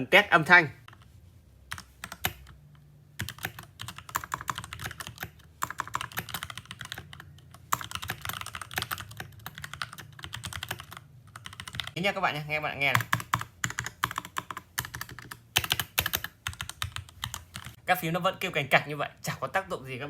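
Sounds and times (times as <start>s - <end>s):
mechanical keyboard typing: 1.7s - 2.6s, 3.2s - 12.0s, 12.8s - 17.8s.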